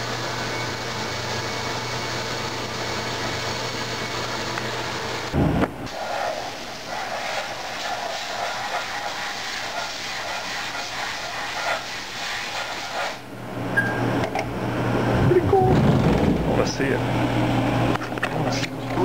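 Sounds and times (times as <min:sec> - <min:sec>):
machine low hum: 0:13.2 - 0:19.0.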